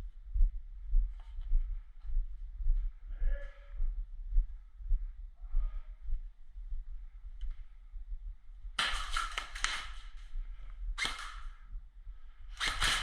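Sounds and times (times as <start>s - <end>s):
airsoft gun firing bursts: 8.8s - 10.1s, 11.0s - 11.6s, 12.5s - 13.0s.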